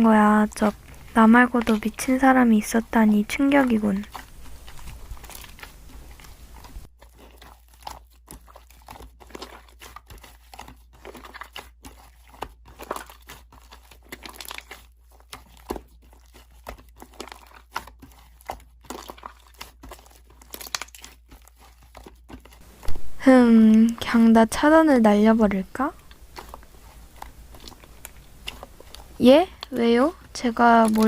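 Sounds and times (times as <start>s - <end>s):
slime squished by hand crackling: 0.4s - 23.0s, 25.1s - 31.0s.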